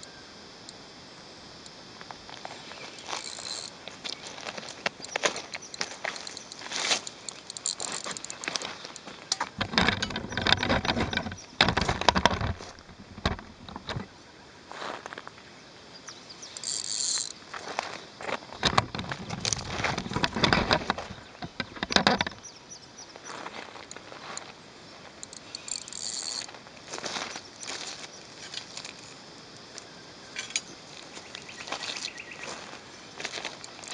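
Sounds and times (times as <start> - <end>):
rustling and crunching handling noises: 2.3 - 14.1, 17.0 - 22.4.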